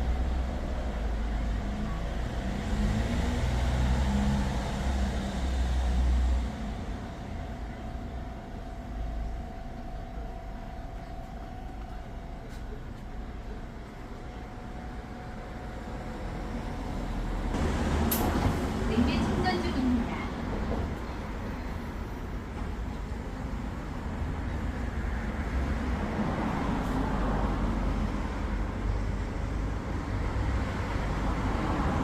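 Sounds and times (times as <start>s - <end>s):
faint constant tone: 5.0s - 17.6s.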